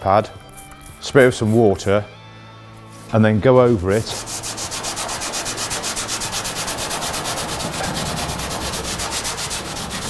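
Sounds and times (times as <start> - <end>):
scouring pad scrubbing steel: 2.9 - 10.0.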